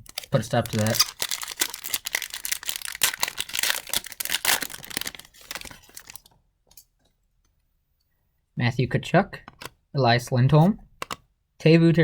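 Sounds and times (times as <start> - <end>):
foil wrapper tearing and crinkling: 0.0 - 6.3.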